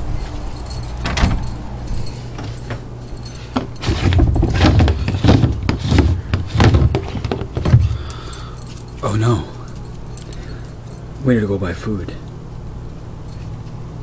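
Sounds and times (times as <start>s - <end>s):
steady low hum: 0.0s - 14.0s
metallic jangling and clatter: 0.1s - 5.1s, 8.0s - 11.4s, 13.2s - 13.8s.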